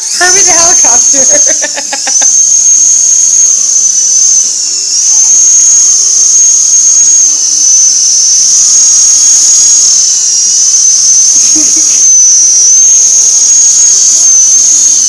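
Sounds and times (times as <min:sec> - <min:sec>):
helicopter turbine whine: 0:00.0 - 0:15.0.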